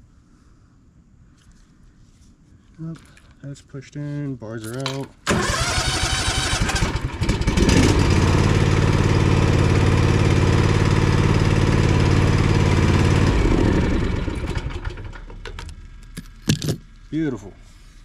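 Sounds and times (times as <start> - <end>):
mower engine starter cranking: 4.6 - 8.8, 13.3 - 16.8
riding mower engine running: 5.2 - 17.1.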